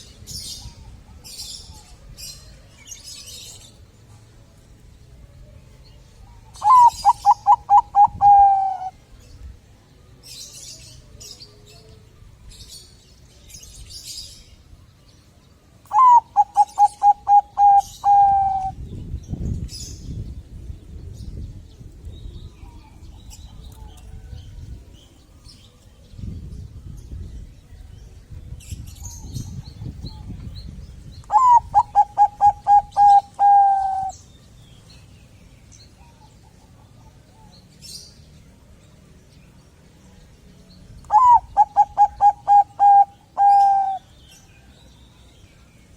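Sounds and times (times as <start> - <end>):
small birds chirping: 0.0 - 45.9
dove cooing: 6.6 - 9.0, 15.9 - 18.8, 31.3 - 34.2, 41.1 - 44.1.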